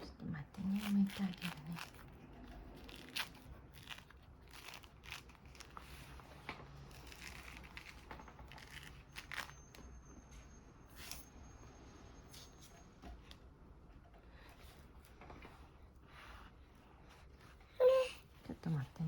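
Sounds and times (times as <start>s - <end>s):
orange peel tearing: 0.6s - 6.2s, 6.8s - 9.6s.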